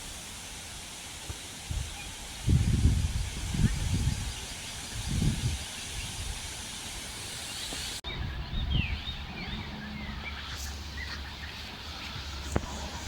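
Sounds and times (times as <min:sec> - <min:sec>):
small birds chirping: 0:01.3 - 0:13.0
wind buffeting microphone: 0:01.6 - 0:13.0.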